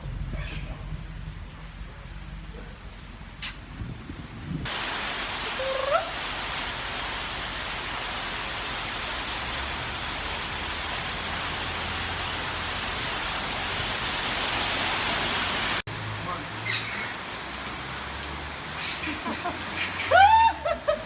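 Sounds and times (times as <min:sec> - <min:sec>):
heavy rain falling: 0:04.7 - 0:21.0.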